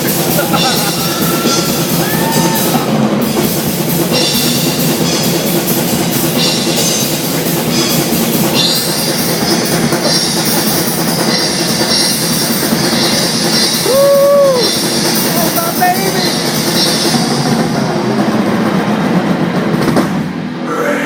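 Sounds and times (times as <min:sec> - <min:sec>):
heavy metal band playing live: 0:00.0 - 0:16.2
drum kit: 0:00.0 - 0:20.6.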